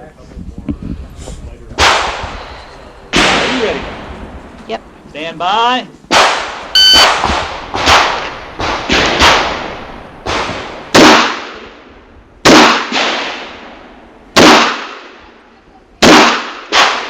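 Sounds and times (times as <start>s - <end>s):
pistol shots with echo: 6.1s - 11.6s, 12.4s - 13.6s, 14.4s - 15.2s, 16.0s - 17.0s.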